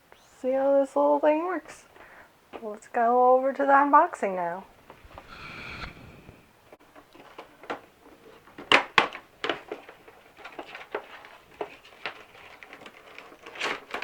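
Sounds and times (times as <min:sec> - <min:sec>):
packaging clicks and rustles: 0:09.4 - 0:14.0.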